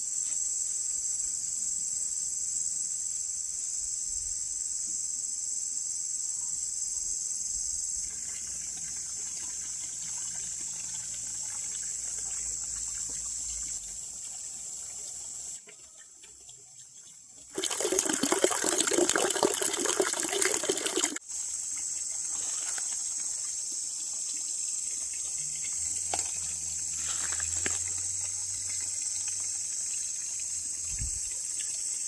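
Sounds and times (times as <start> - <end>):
high insect drone: 0.0 - 14.0, 17.6 - 32.0
water splashing: 17.5 - 21.2.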